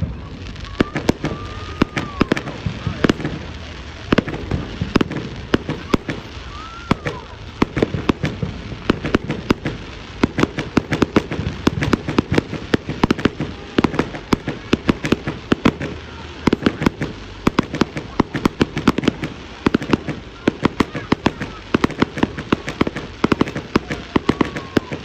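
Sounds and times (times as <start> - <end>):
fireworks bangs and crackling pops: 0.0 - 25.0.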